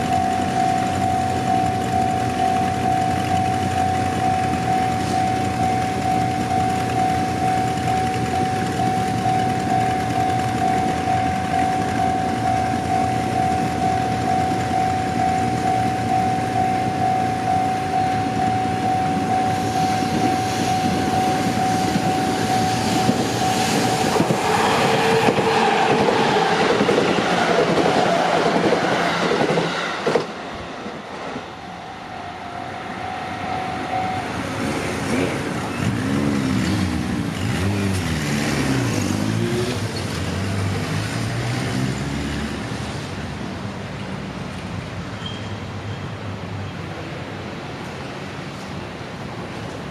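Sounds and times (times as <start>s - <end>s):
level crossing warning bell: 0.0s - 25.0s, 31.4s - 35.7s
train passing: 0.0s - 49.9s.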